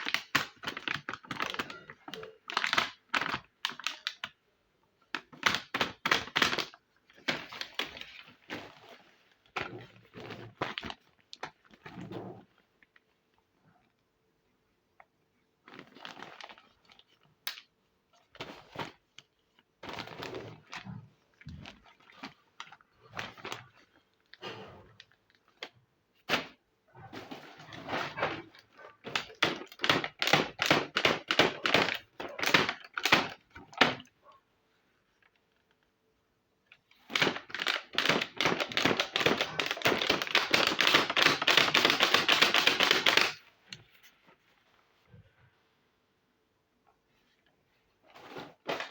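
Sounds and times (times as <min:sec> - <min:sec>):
plastic toy pieces clicking: 0:37.2 - 0:43.4.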